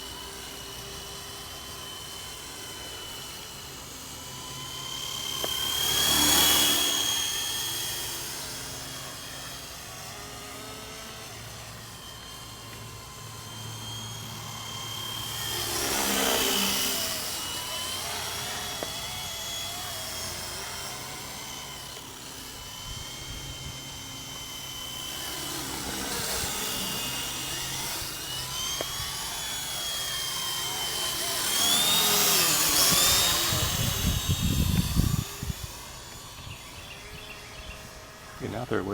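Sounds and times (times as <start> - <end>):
rc helicopter motor whine: 0.0 - 38.9.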